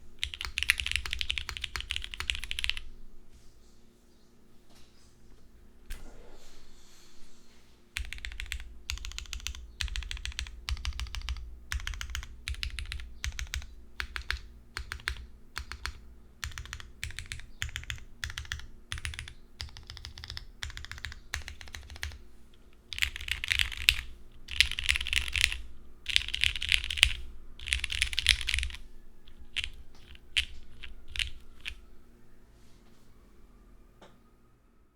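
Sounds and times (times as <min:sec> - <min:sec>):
mechanical keyboard typing: 0:00.2 - 0:02.8, 0:08.0 - 0:22.2, 0:22.9 - 0:31.8.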